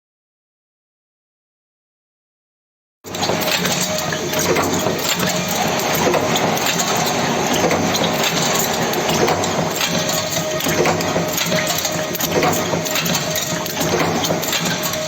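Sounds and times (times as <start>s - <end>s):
forging machine clattering: 3.1s - 15.0s.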